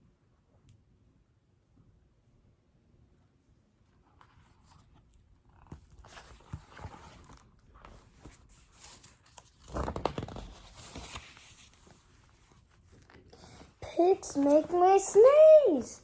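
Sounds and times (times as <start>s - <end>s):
paper pages rustling: 4.2s - 16.0s.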